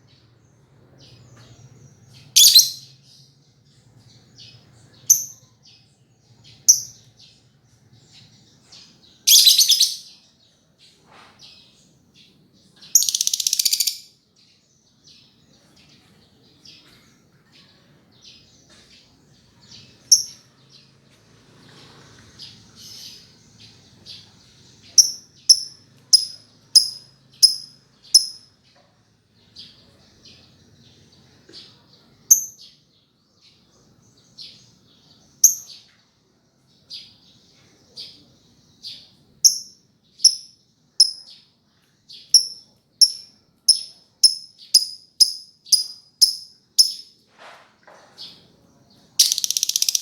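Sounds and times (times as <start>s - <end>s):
lovebird chirping and trilling: 2.2s - 3.0s, 5.0s - 5.5s, 6.5s - 7.1s, 9.2s - 10.2s, 12.8s - 14.1s, 20.0s - 20.5s, 24.8s - 28.6s, 39.4s - 41.4s, 42.2s - 47.2s, 49.2s - 50.0s.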